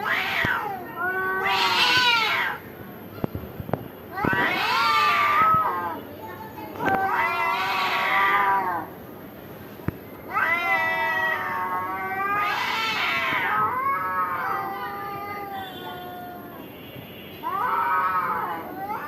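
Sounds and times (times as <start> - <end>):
cats yowling in a fight: 0.0 - 2.6, 4.1 - 6.0, 6.8 - 8.9, 10.3 - 16.6, 17.4 - 19.0.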